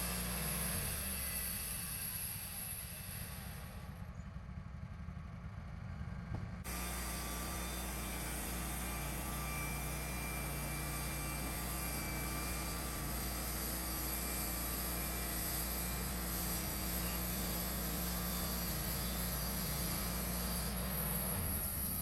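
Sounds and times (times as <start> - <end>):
bandsaw mill running: 0.0 - 3.7, 6.7 - 22.0
faint high whine: 0.0 - 4.4, 6.7 - 22.0.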